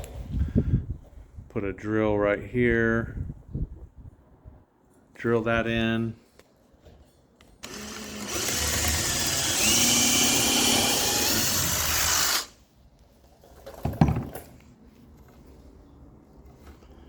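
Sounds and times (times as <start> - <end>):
power drill driving screw into wood: 7.6 - 12.6.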